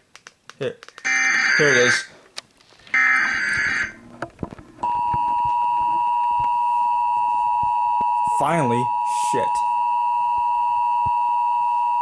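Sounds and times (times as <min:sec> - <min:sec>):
alert header data tones: 0:01.1 - 0:02.1, 0:02.9 - 0:04.0
two-tone attention signal: 0:01.1 - 0:02.1, 0:03.0 - 0:04.0, 0:04.8 - 0:12.0.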